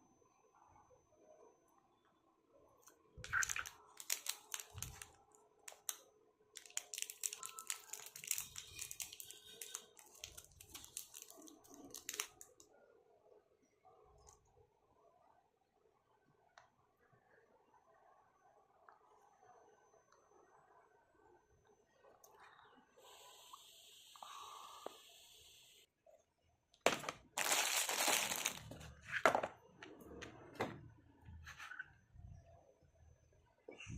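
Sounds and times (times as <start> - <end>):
chocolate wrapper crinkling: 3.2 - 12.6, 27.3 - 28.8.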